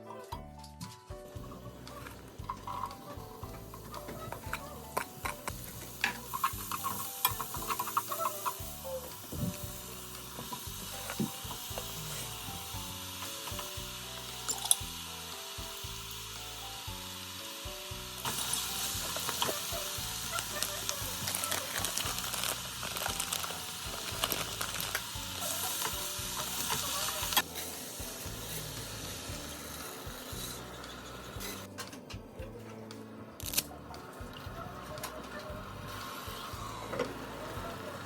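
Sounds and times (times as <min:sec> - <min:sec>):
background music: 0:00.0 - 0:38.0
food sizzling in a frying pan: 0:01.2 - 0:31.8, 0:34.2 - 0:38.0.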